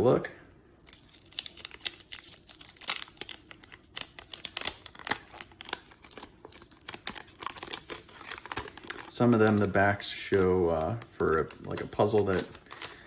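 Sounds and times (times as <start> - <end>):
wax-paper wrapper crinkling and tearing: 0.7 - 13.0.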